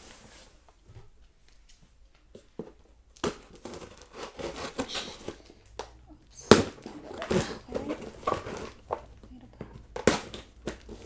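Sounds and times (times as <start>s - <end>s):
cardboard flaps crinkling: 2.2s - 11.0s
clicks and scraping: 2.2s - 11.0s
cardboard snapping: 2.3s - 11.0s.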